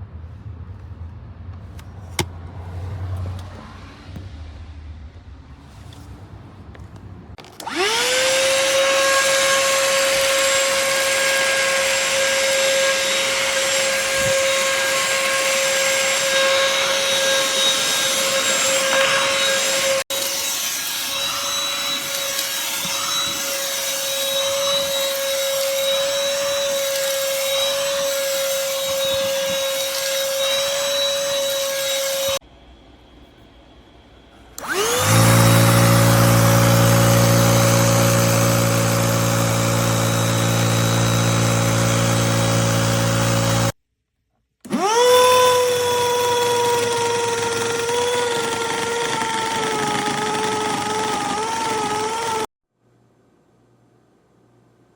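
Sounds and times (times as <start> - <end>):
handheld vacuum motor whine: 7.4 - 32.4, 34.6 - 43.8, 44.6 - 52.5.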